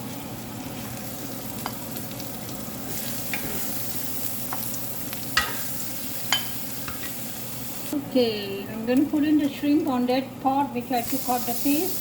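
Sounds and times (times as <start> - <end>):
paste sizzling in oil: 0.0 - 8.0, 11.0 - 12.0.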